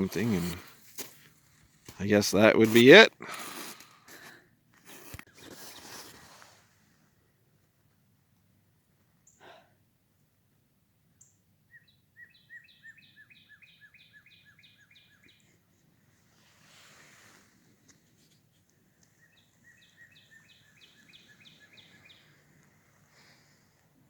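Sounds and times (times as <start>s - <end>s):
songbird singing: 11.1s - 15.8s, 18.7s - 23.8s.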